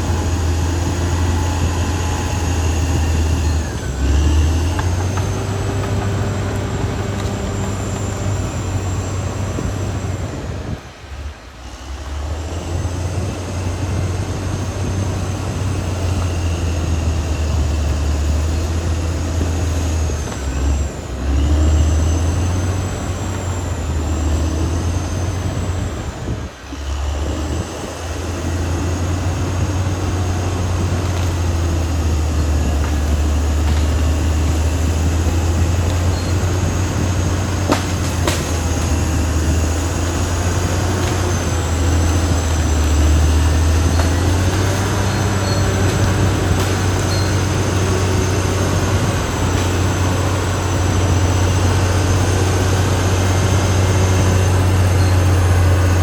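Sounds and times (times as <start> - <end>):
bulldozer diesel engine drone: 0.0 - 56.0
thin high machine whine: 0.0 - 56.0.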